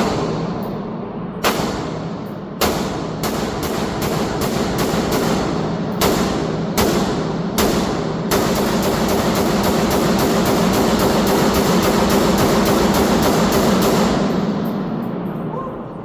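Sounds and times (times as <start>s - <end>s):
rapid rifle fire: 1.4s - 14.6s.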